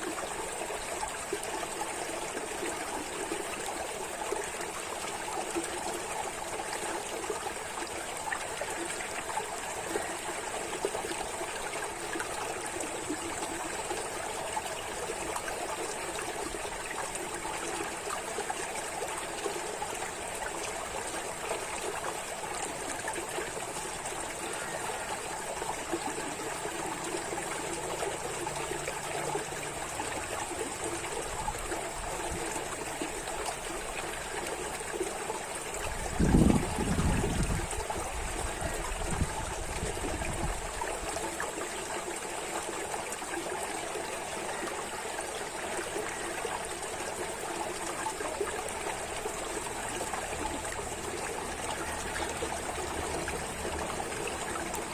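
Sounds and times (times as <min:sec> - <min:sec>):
water trickling over stones: 0:00.0 - 0:54.9.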